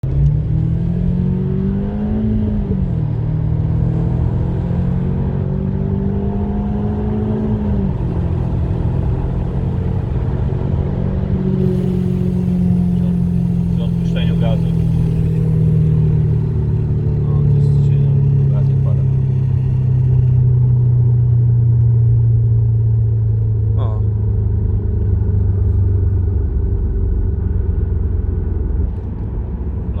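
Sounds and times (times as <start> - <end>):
car engine humming: 0.1 - 30.0
gearbox whine rising in pitch: 11.4 - 18.4.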